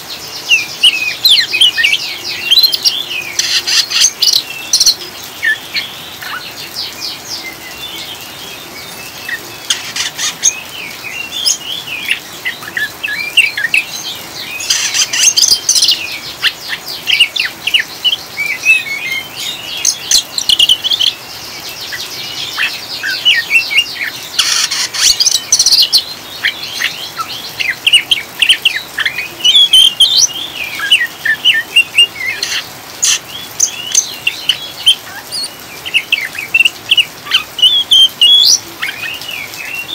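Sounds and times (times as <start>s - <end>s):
bird chattering twitter: 14.6s - 17.9s, 22.0s - 39.2s.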